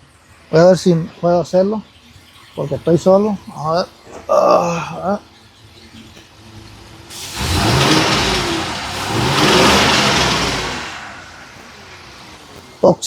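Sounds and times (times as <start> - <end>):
misfiring engine revving: 2.4 - 13.0.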